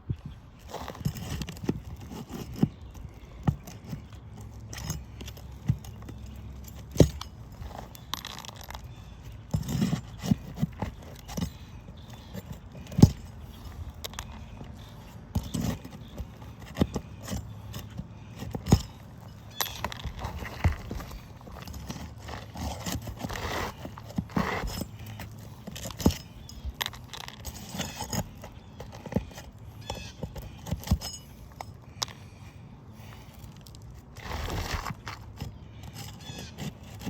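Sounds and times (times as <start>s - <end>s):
shingles being pried loose: 0.6s - 32.2s, 33.1s - 37.0s
footsteps on roof deck: 9.4s - 31.1s.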